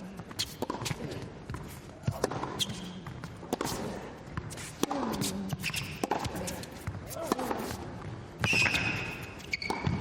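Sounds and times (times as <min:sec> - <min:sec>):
tennis ball bouncing: 0:00.1 - 0:10.0
tennis ball struck by rackets: 0:02.0 - 0:10.0.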